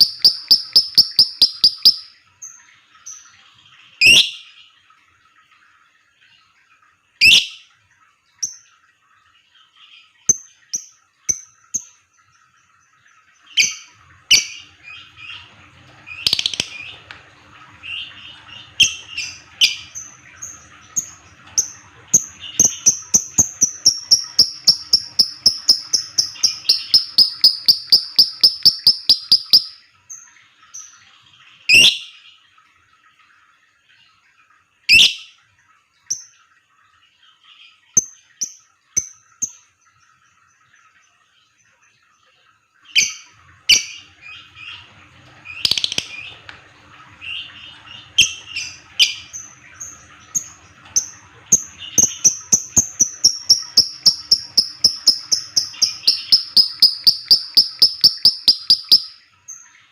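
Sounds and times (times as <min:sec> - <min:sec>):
lovebird rapid chatter: 0:00.0 - 0:02.0, 0:23.7 - 0:29.7, 0:53.0 - 0:59.1
lovebird shrill calls: 0:00.0 - 0:02.1, 0:23.6 - 0:29.8, 0:53.0 - 0:59.2.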